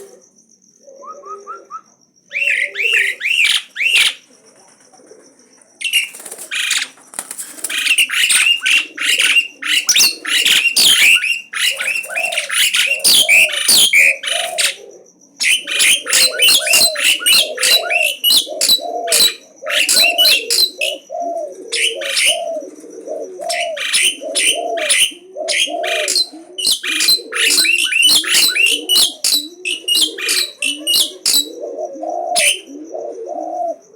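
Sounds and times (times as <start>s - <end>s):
starling chattering song: 2.3s - 4.3s, 5.8s - 14.8s, 15.4s - 21.1s, 21.7s - 22.7s, 23.4s - 32.8s
lower bird call: 7.6s - 33.9s.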